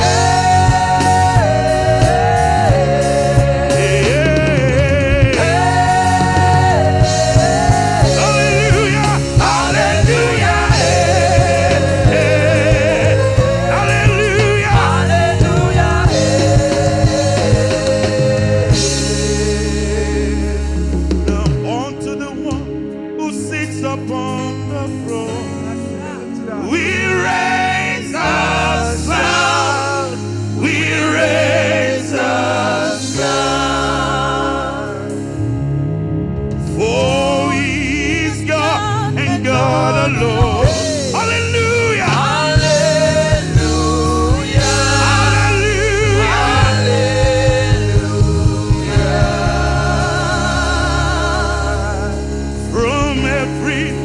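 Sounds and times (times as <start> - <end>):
person singing with vibrato: 0.0 - 20.8, 36.7 - 54.0
steady drum beat: 0.0 - 21.8, 38.7 - 53.7
gospel band with bass: 0.0 - 54.0.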